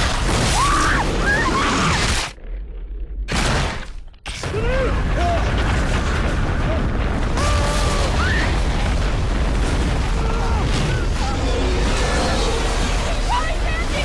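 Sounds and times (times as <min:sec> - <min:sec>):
people shouting and screaming: 0:00.4 - 0:02.0, 0:04.4 - 0:05.7, 0:06.6 - 0:08.9, 0:10.0 - 0:14.0
avalanche rumble: 0:04.4 - 0:14.0.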